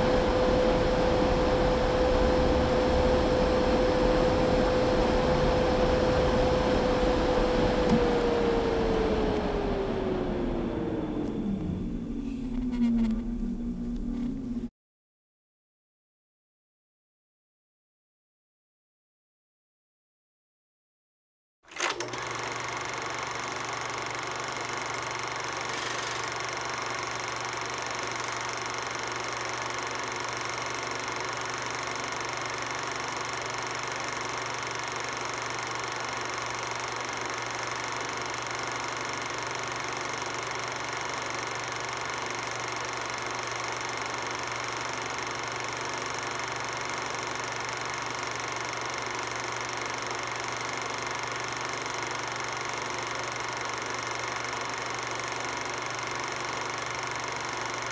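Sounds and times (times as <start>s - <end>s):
steady machine hum: 0.0s - 14.7s.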